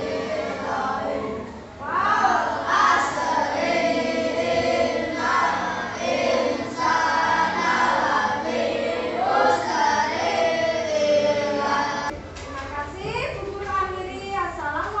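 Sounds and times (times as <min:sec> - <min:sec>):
children singing in chorus: 0:00.0 - 0:12.1.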